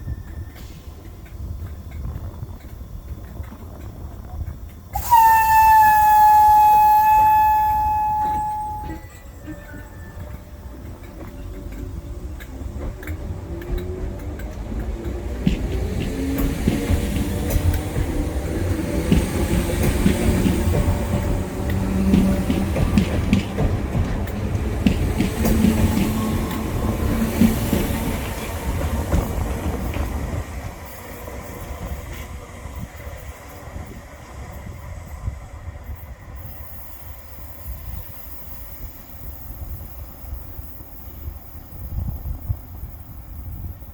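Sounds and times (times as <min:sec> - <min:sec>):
train wheels clattering: 0:00.0 - 0:34.0.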